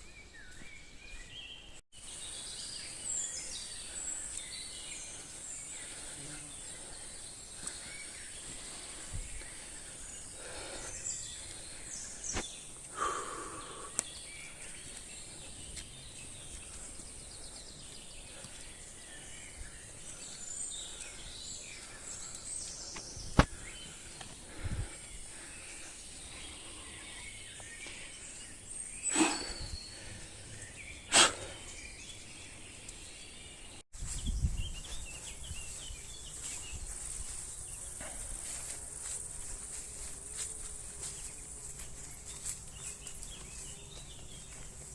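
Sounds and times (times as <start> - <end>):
bird chirps: 25.0 - 38.8.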